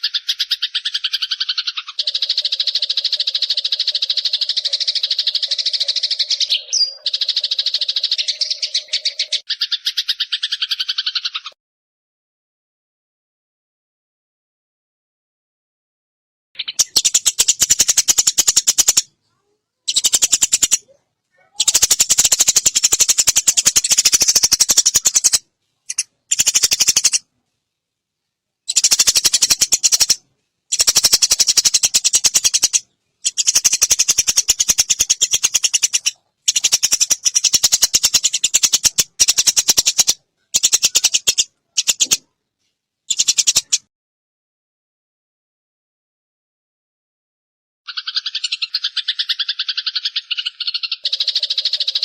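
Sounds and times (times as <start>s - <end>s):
sparrow chattering calls: 0.0s - 11.6s, 16.6s - 19.1s, 19.9s - 27.2s, 28.7s - 42.3s, 43.1s - 43.9s, 47.9s - 52.0s.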